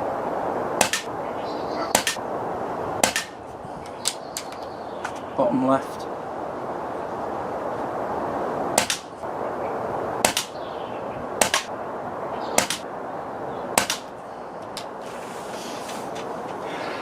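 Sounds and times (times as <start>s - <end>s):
air rifle shots: 0.8s - 1.1s, 1.9s - 2.2s, 3.0s - 3.4s, 8.8s - 9.1s, 10.2s - 10.6s, 11.4s - 11.7s, 12.6s - 12.9s, 13.8s - 14.1s.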